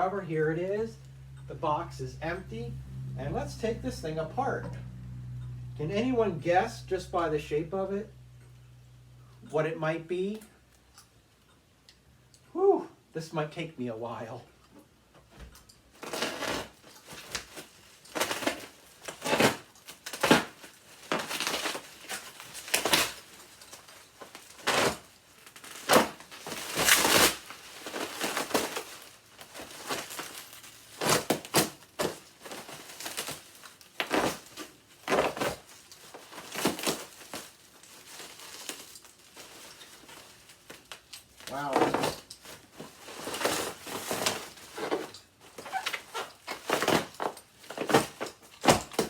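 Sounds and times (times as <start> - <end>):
bubble wrap crinkling: 15.9 - 49.0.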